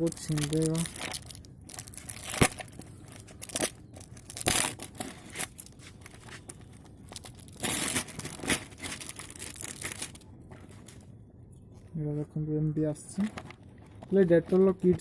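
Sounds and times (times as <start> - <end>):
packaging tearing and crinkling: 0.0 - 11.0.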